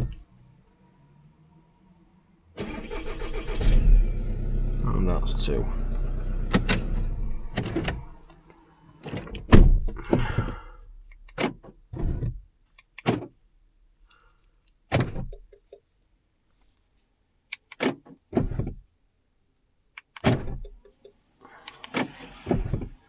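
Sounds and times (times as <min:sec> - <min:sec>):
car door clunks and clicks: 0:09.0 - 0:10.6, 0:11.2 - 0:13.4, 0:14.9 - 0:15.6, 0:17.6 - 0:18.8, 0:20.0 - 0:20.9, 0:21.8 - 0:23.0.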